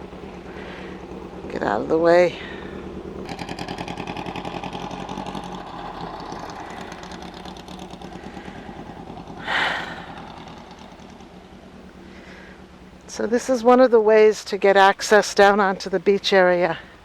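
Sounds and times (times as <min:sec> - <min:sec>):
dune buggy engine passing: 0:00.0 - 0:16.0
rushing burst: 0:02.4 - 0:11.0.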